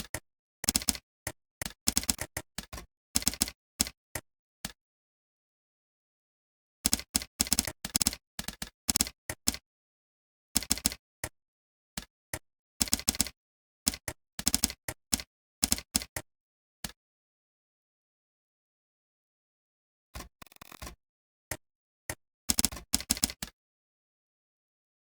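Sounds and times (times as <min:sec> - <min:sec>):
typing on a keyboard: 0:00.0 - 0:04.0, 0:06.9 - 0:09.6, 0:10.6 - 0:11.0, 0:12.8 - 0:16.3, 0:22.5 - 0:23.6.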